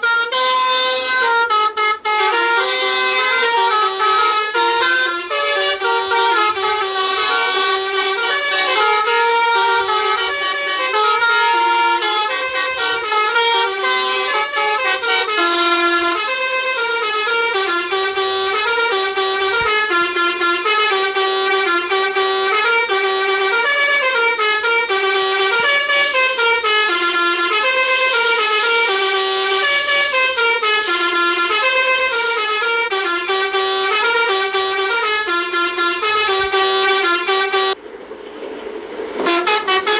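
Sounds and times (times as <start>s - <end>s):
musical bus horn playing a tune: 0.0s - 37.8s, 39.2s - 39.9s.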